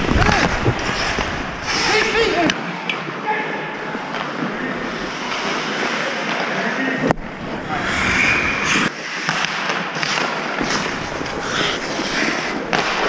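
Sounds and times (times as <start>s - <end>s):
hockey sticks and puck clacking: 0.0s - 3.1s, 4.1s - 7.2s, 8.2s - 13.0s
skate blades scraping ice: 0.2s - 2.5s, 7.6s - 13.0s.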